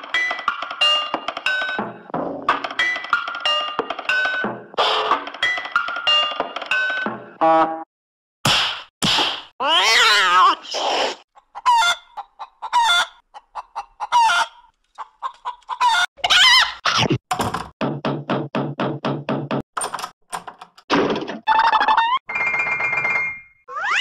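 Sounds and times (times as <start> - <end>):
chicken clucking: 11.3 - 16.3.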